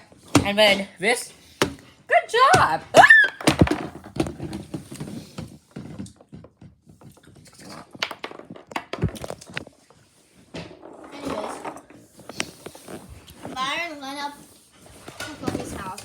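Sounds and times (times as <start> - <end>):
toys tapping on hard surface: 7.9 - 9.6.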